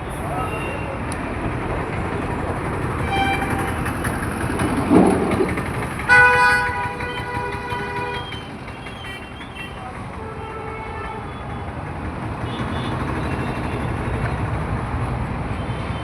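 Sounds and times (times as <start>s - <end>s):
road traffic: 0.0s - 16.0s
vehicle horn: 3.0s - 3.9s, 6.1s - 8.4s, 9.0s - 11.6s, 12.4s - 13.8s.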